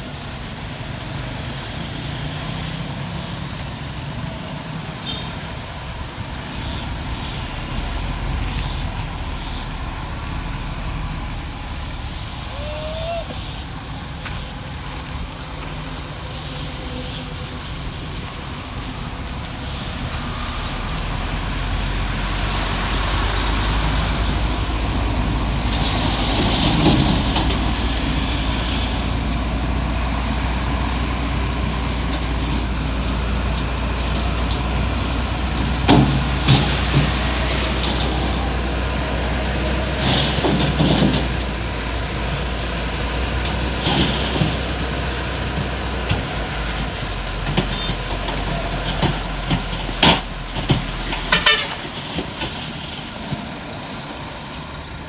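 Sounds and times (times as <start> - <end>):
bulldozer diesel engine running: 0.0 - 55.0
track clatter: 0.0 - 55.0
metallic clanks and knocks: 43.4 - 52.8.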